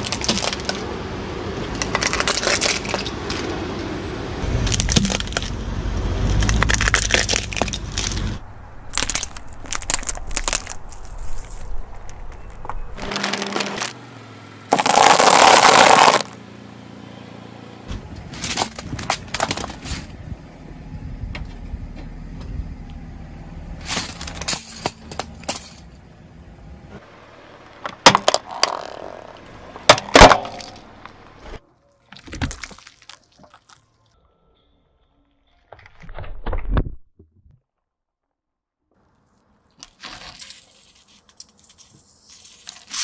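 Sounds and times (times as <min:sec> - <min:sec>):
objects cracking under car tire: 0:00.0 - 0:01.0, 0:01.6 - 0:03.6, 0:04.4 - 0:05.6, 0:06.2 - 0:14.0, 0:14.7 - 0:16.4, 0:18.2 - 0:20.2, 0:23.8 - 0:26.0, 0:27.6 - 0:33.9, 0:38.9 - 0:43.0.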